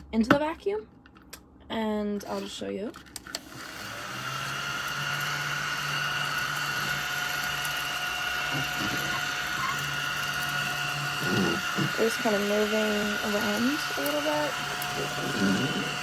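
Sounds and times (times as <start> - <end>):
mini vacuum motor whine: 3.3 - 16.0.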